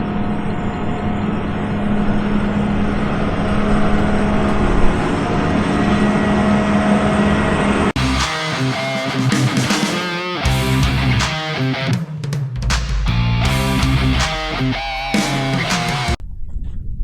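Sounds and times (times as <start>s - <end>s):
rock music with electric guitar: 8.0s - 12.1s, 12.8s - 16.2s
large engine humming: 10.5s - 11.8s, 13.1s - 16.2s.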